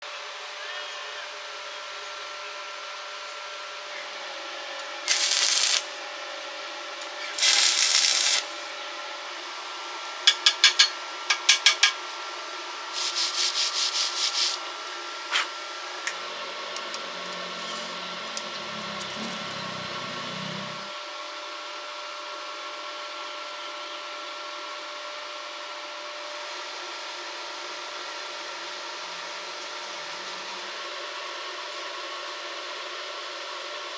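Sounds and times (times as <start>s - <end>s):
steady hum: 5.1s - 6.0s, 7.1s - 8.8s
rasping scraping strokes: 13.0s - 14.6s.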